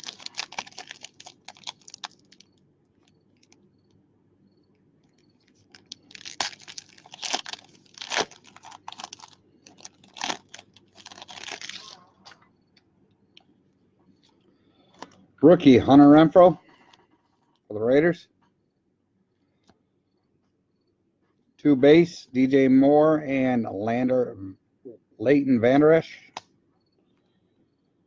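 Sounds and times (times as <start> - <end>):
plastic wrapping tearing and crinkling: 0.0 - 3.6, 5.1 - 12.4.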